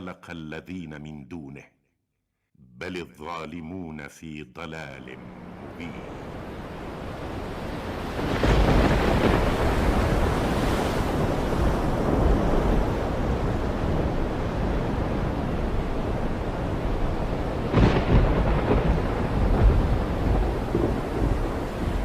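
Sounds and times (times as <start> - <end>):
rushing rain: 5.2 - 22.0
rolling thunder rumble: 6.2 - 22.0
thunder crash: 6.9 - 22.0.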